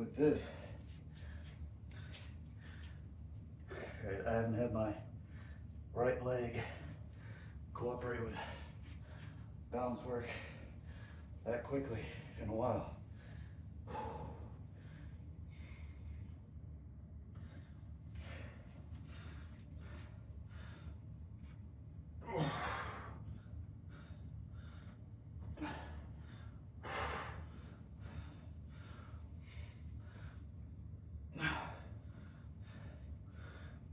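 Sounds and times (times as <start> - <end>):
steady low hum: 0.0 - 33.9
man breathing hard: 0.2 - 4.2, 10.2 - 11.4, 12.0 - 16.4, 17.3 - 21.6, 22.2 - 33.9.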